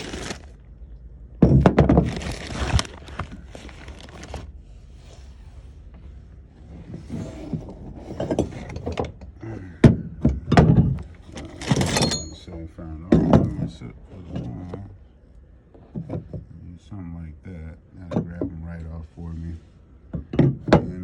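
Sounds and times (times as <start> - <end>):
metal hand tools clattering: 11.6 - 12.6.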